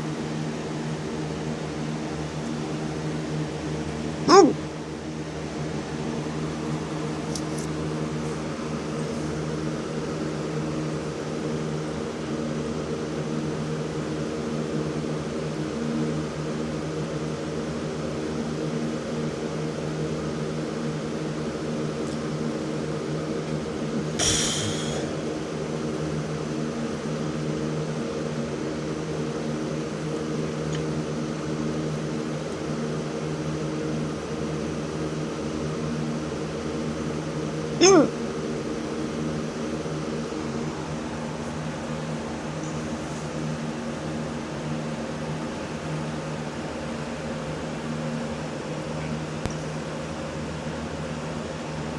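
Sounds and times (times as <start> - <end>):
fan-like machine humming: 0.0 - 51.9
breathy hiccup: 4.3 - 4.6, 37.8 - 38.2.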